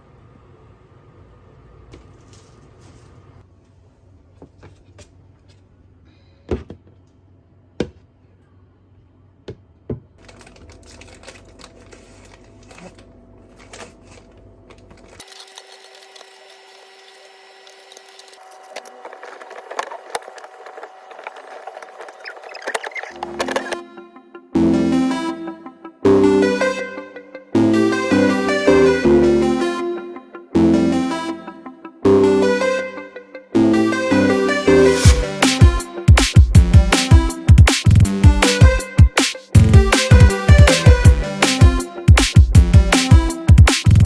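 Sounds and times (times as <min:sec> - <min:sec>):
low background hum: 0:00.0 - 0:23.8.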